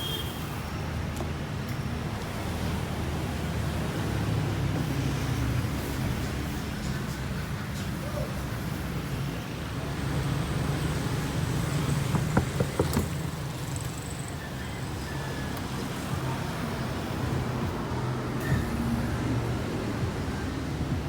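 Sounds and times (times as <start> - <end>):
short knocks: 11.9 - 13.3.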